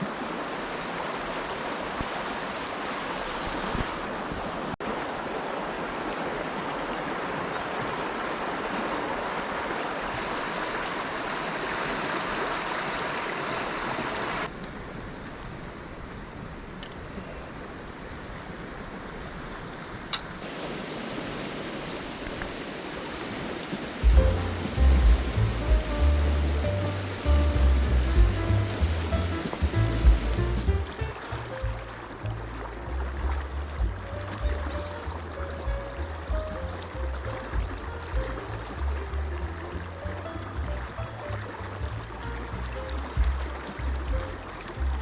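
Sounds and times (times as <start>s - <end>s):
stream water rushing: 0.0s - 15.4s, 17.6s - 45.0s.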